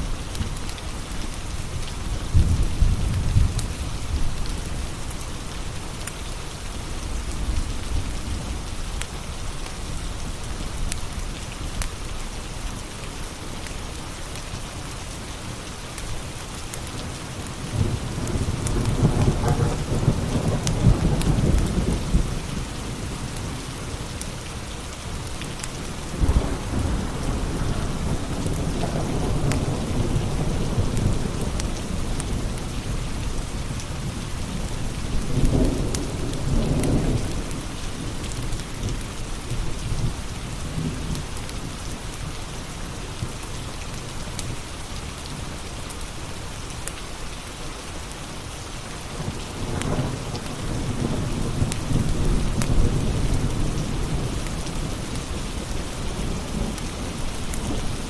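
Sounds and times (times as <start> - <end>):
steady rain: 0.0 - 58.0
thunder rolling: 17.7 - 22.4, 25.9 - 33.0.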